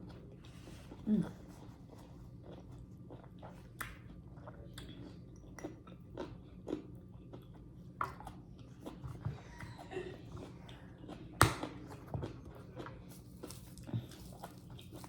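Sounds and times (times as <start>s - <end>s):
person chewing fruit: 0.0s - 15.0s.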